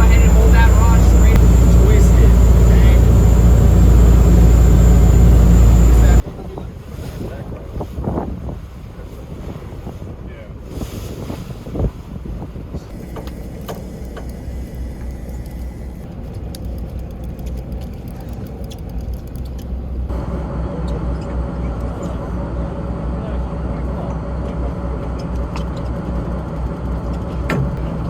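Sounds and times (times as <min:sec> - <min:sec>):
motorboat engine running: 0:00.0 - 0:07.0, 0:12.6 - 0:28.0
wind buffeting microphone: 0:00.0 - 0:13.0.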